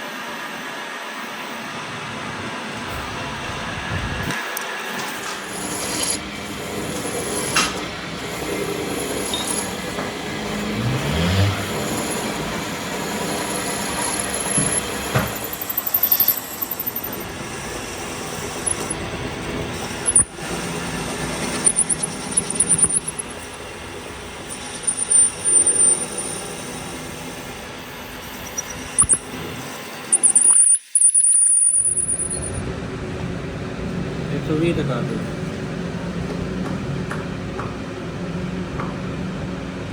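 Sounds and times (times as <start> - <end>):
metal lathe running: 0.4 - 39.9
cutting tool squealing: 5.3 - 19.1, 19.7 - 23.7, 24.4 - 27.0, 28.1 - 32.6.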